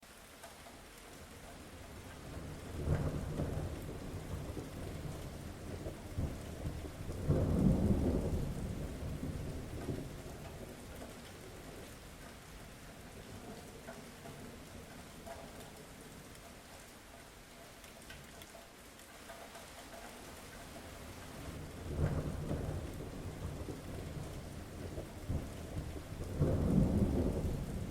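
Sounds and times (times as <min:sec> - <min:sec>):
steady rain falling: 0:00.0 - 0:27.9
low rolls of thunder: 0:01.8 - 0:16.3, 0:20.7 - 0:27.9.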